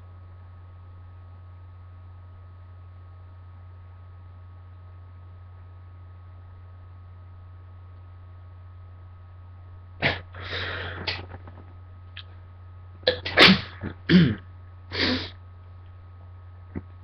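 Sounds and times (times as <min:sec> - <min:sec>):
sharp breaths: 0:10.0 - 0:11.3, 0:14.9 - 0:15.4
woman sneezing: 0:10.0 - 0:11.3, 0:13.1 - 0:14.4.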